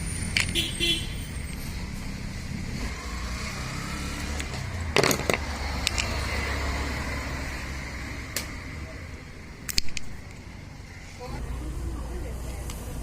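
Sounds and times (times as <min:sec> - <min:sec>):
background motor traffic rumble: 0:00.0 - 0:13.0
clicks of metal parts and tools: 0:00.3 - 0:00.6, 0:04.3 - 0:06.2, 0:09.6 - 0:10.4.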